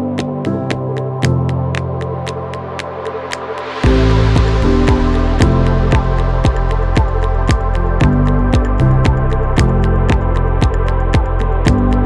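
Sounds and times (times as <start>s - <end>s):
electronic music: 0.0s - 12.0s
kick-drum beat: 3.8s - 12.0s.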